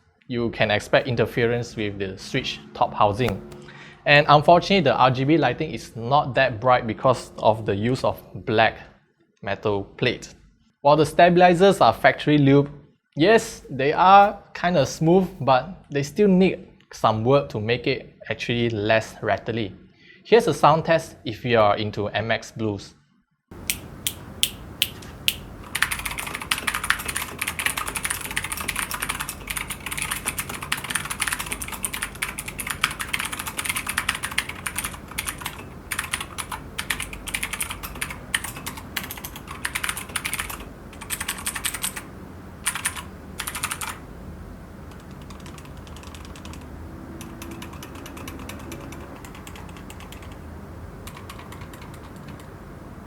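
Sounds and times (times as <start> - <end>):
faint background noise: 0.0 - 53.0
clicky mechanical keyboard typing: 3.2 - 3.6, 23.6 - 42.1, 42.7 - 44.0, 44.9 - 50.4, 51.0 - 52.5.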